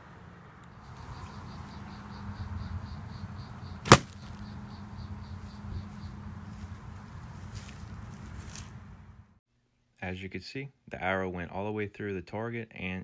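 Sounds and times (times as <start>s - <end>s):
insects chirping: 0.6s - 8.8s
arrow hitting target: 3.8s - 4.4s.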